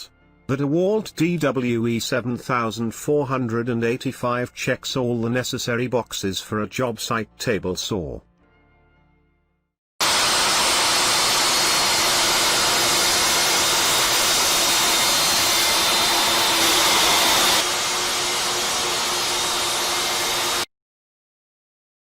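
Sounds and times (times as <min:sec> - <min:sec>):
table saw running: 0:10.0 - 0:20.7.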